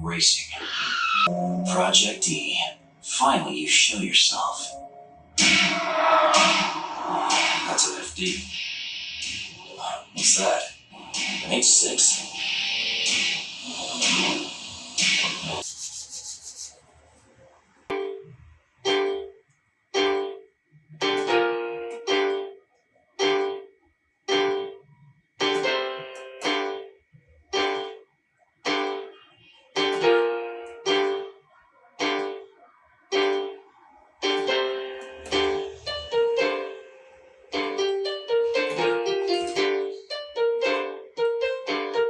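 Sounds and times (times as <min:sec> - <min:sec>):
piano-like keyboard chords: 0:01.3 - 0:08.6, 0:17.9 - 0:28.0, 0:28.6 - 0:42.0.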